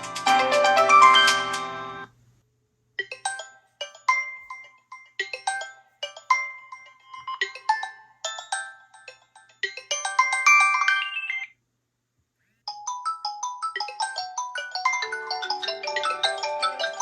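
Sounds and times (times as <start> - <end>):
bell-like phone ringtone: 3.0 - 11.6, 12.7 - 17.0
smartphone ringtone: 3.0 - 11.6, 12.7 - 17.0.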